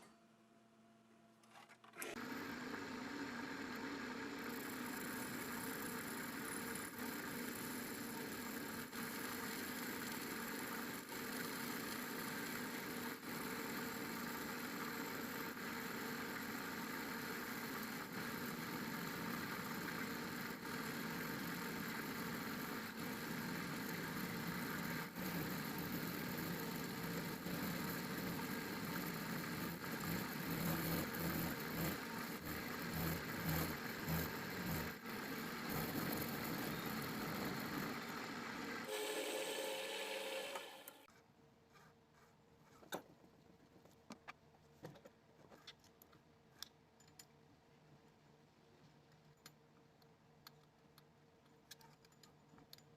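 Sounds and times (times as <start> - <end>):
machine running: 21.7 - 41.1.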